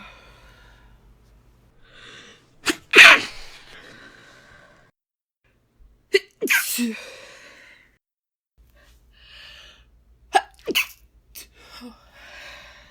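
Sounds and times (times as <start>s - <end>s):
breath in: 1.8s - 4.8s
woman sneezing: 2.6s - 3.8s, 6.1s - 7.0s, 10.3s - 11.0s.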